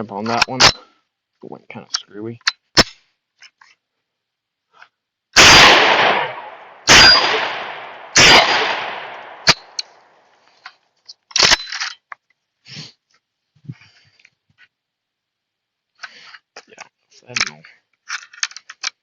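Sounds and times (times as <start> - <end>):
shotgun blasts echoing: 5.4 - 10.1.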